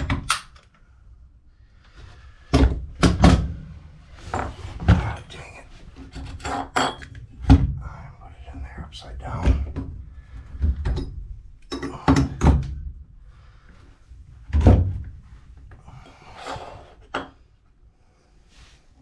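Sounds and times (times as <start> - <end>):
soft rustle: 18.3 - 19.0.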